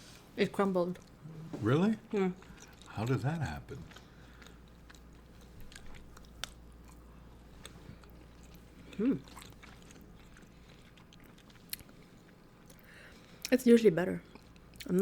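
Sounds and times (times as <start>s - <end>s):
chewing and biting: 2.4s - 13.6s.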